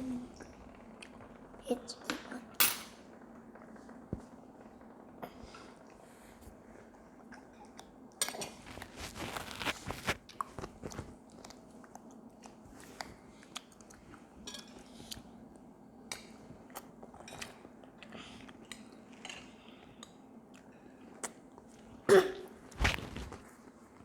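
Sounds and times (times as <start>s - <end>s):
faint steady hum: 0.0s - 24.0s
cutlery clicking against dishes: 2.5s - 3.0s
chewing: 6.8s - 15.3s, 16.1s - 22.0s.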